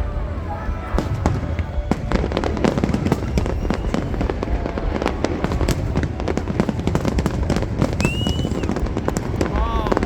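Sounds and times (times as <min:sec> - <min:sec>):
fireworks cracks and bangs: 0:00.0 - 0:10.0.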